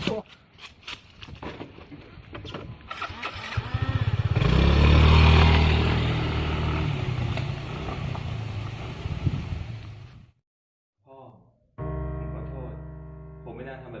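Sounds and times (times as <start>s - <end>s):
motorcycle engine revving: 3.0s - 9.7s.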